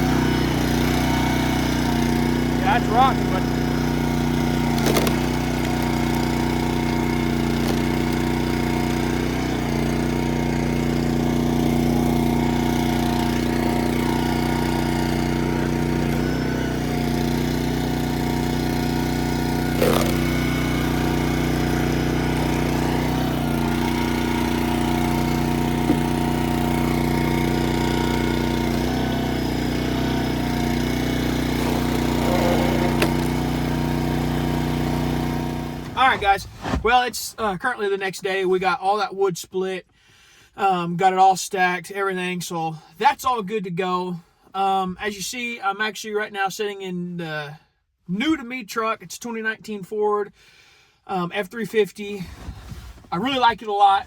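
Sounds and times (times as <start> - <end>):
engine running steadily: 0.0 - 36.2.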